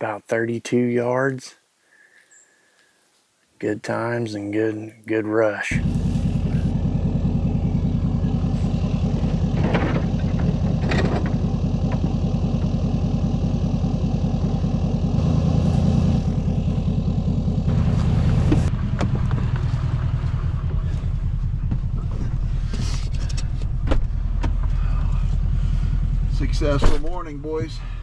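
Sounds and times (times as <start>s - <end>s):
vehicle engine idling: 5.7s - 28.0s.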